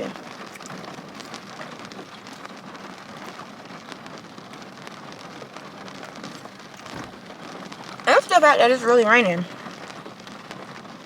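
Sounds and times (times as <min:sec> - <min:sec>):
rain hissing on a car: 0:00.0 - 0:11.0
raindrops ticking on glass: 0:00.0 - 0:11.0.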